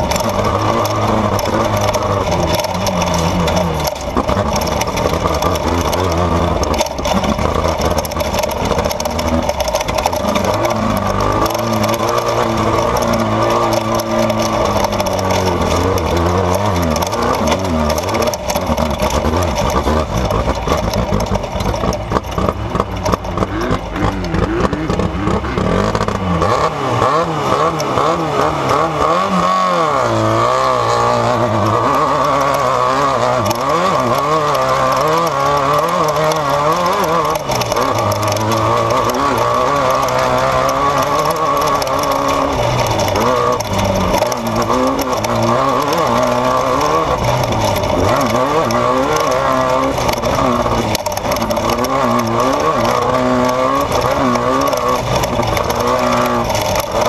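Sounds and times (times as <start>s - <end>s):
dense rattling: 0.0s - 57.0s
race vehicle engine revving: 0.0s - 57.0s.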